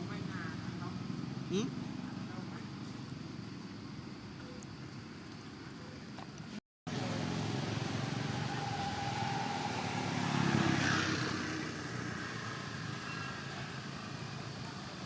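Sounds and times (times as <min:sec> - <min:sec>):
motor vehicle passing: 0:06.9 - 0:15.0.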